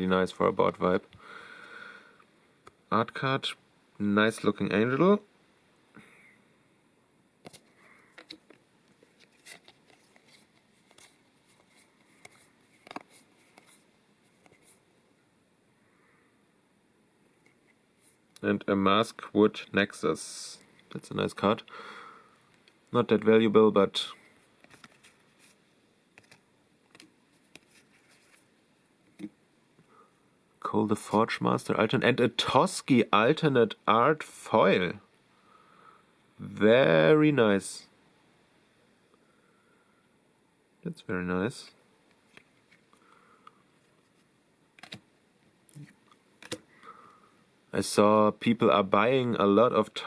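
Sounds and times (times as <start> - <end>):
trading cards clicking and rustling: 7.4 - 14.8, 24.6 - 28.4, 44.8 - 45.0, 45.8 - 46.7.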